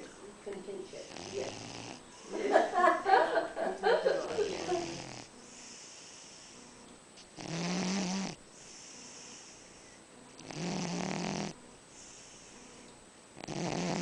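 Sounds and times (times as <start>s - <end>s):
cat snoring: 1.0s - 2.1s, 4.2s - 6.6s, 7.4s - 12.7s, 13.4s - 14.0s
cat breathing softly: 8.5s - 10.0s, 11.9s - 12.9s.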